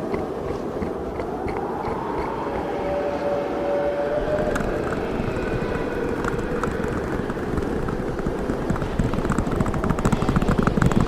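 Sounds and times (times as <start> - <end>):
howling blizzard wind: 0.0 - 11.0
fast clicks and rattles: 4.2 - 11.0.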